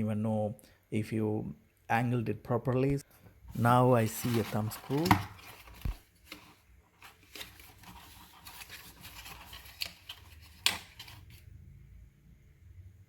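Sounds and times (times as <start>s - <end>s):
packaging rustling: 3.5s - 11.4s.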